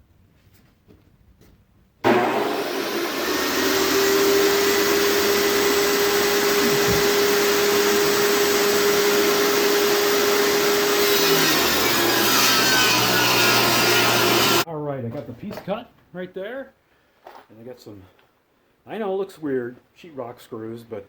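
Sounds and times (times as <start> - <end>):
table saw cutting board: 2.0 - 14.6.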